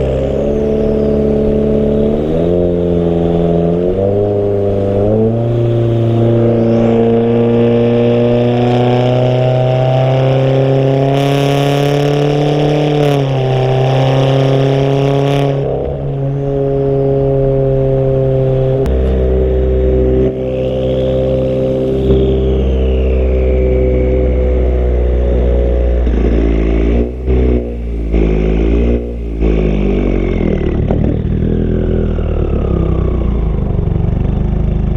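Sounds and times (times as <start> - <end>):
car engine exhaust revving: 0.0 - 34.9
deep low rumble: 15.6 - 34.9.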